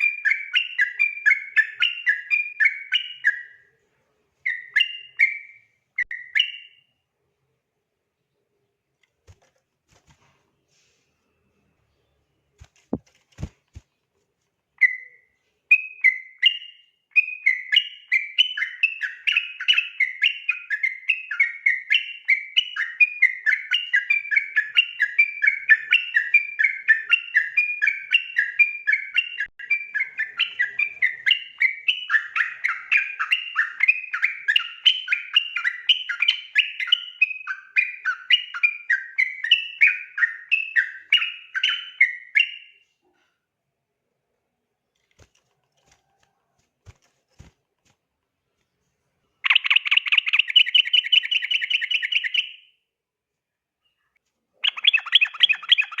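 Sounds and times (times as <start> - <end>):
bird singing fast chattering notes: 49.4 - 52.6, 54.6 - 56.0.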